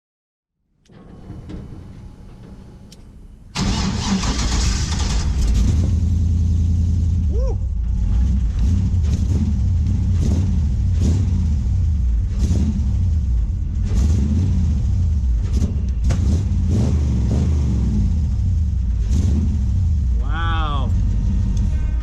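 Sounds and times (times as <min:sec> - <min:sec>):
engine low rumble: 0:00.9 - 0:22.0
engine sharp pops: 0:15.4 - 0:16.8.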